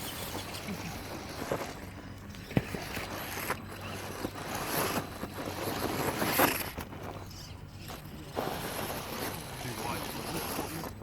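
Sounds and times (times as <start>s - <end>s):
rc crawler scraping: 0.0s - 11.0s.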